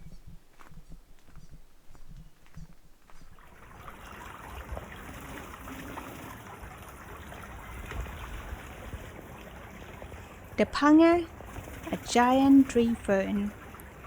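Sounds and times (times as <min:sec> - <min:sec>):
stream flowing: 0:03.3 - 0:14.0.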